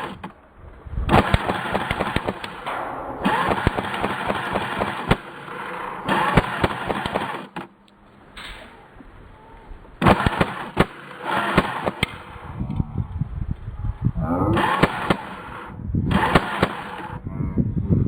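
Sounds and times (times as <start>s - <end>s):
airsoft gun shots: 0.0s - 0.4s, 1.1s - 7.8s, 10.0s - 12.6s, 14.6s - 17.2s
pellets cracking on plastic: 1.1s - 8.8s, 10.0s - 12.4s.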